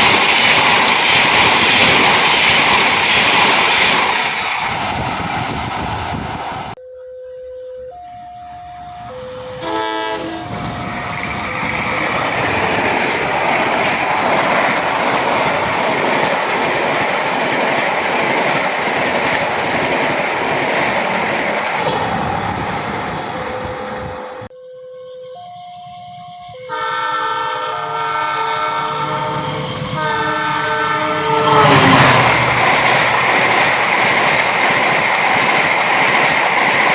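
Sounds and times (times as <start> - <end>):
train passing at speed: 0.0 - 6.8, 8.6 - 24.5, 26.1 - 36.9
train horn: 8.1 - 12.7, 25.4 - 32.6.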